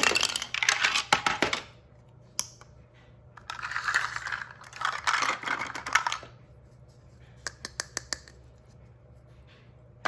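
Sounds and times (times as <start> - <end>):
plastic toy pieces rattling: 0.0 - 1.6, 3.5 - 6.3.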